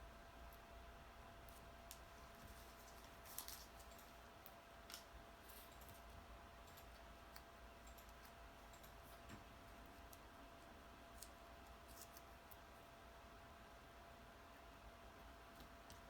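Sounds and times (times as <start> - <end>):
faint steady hum: 0.0 - 16.0
paper handling clicks: 1.5 - 6.0.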